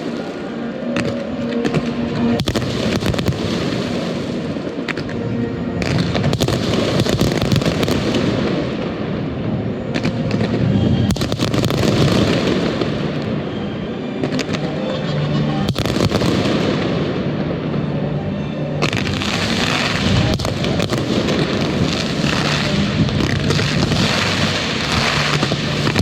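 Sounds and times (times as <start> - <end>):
fireworks bursting and crackling: 0.0 - 13.6, 14.2 - 17.5, 18.8 - 26.0.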